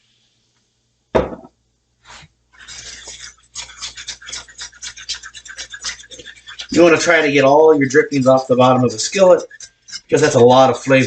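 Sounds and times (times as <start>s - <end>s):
metal fork scraping a skillet: 2.1s - 11.0s
fork clinking: 2.6s - 11.0s.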